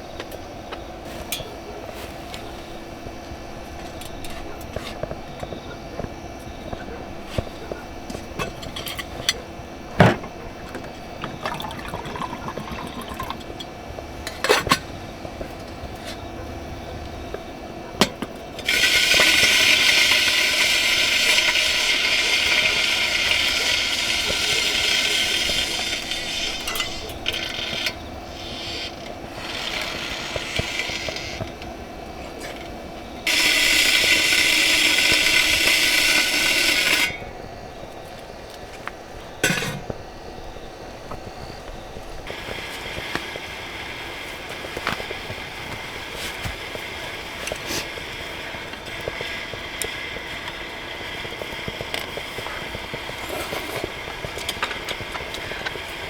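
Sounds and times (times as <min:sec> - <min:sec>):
water pouring into container: 0:11.2 - 0:13.5.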